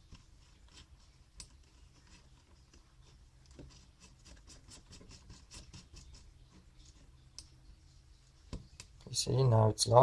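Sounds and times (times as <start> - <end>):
small clicks and scrapes: 0.0 - 7.6.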